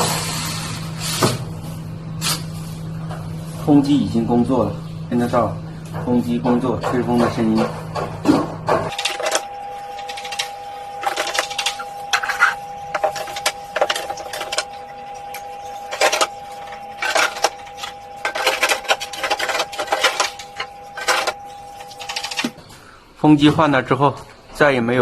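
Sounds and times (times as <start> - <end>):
freezer fan motor whining: 0.0 - 23.3.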